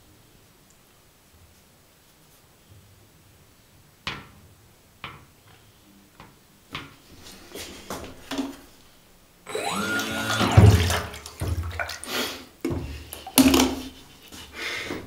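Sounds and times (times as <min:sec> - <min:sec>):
small electric motor whining: 0:09.5 - 0:11.1
propeller splashing water: 0:09.5 - 0:12.2.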